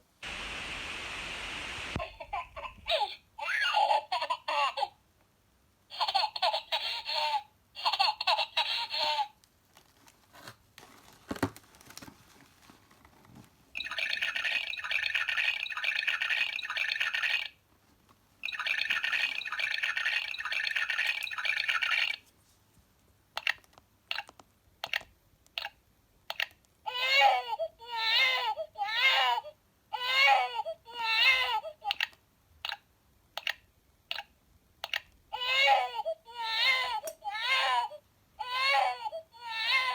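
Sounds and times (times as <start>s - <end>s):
recorded baby giggles: 2.0s - 5.0s, 5.9s - 9.4s.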